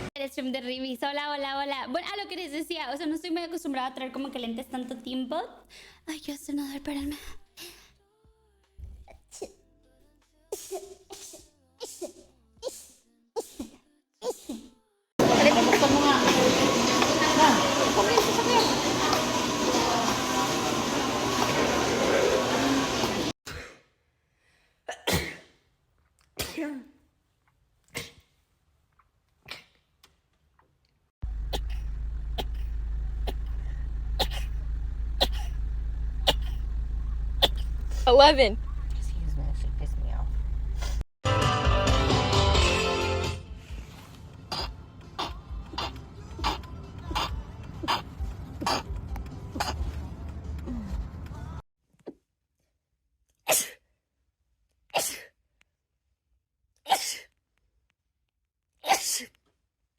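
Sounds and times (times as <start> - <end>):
person sneezing: 10.5 - 14.8, 24.9 - 25.6, 26.4 - 27.0, 27.9 - 28.4, 29.4 - 29.8, 37.4 - 38.0, 47.2 - 48.9, 53.5 - 53.9, 54.9 - 55.4, 56.9 - 57.4, 58.8 - 59.4
steady low hum: 31.2 - 41.0.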